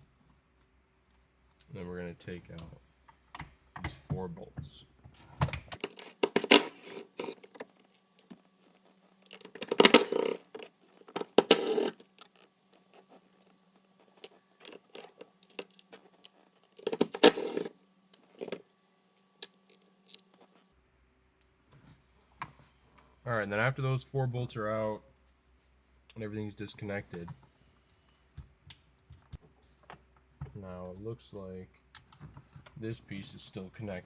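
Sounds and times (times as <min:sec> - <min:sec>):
ratchet clicking and rattling: 0:05.8 - 0:07.6, 0:09.3 - 0:12.4, 0:14.6 - 0:16.0, 0:16.8 - 0:18.6.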